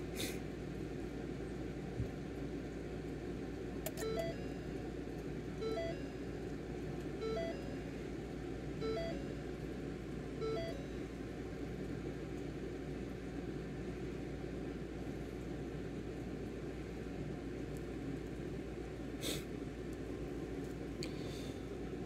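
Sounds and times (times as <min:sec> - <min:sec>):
steady low hum: 0:00.0 - 0:22.0
electronic chime: 0:05.6 - 0:06.2, 0:07.2 - 0:07.9, 0:08.8 - 0:09.4.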